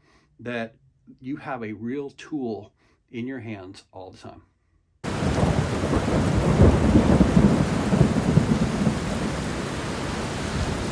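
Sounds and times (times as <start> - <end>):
rain: 5.0 - 10.9
rolling thunder: 5.0 - 10.9.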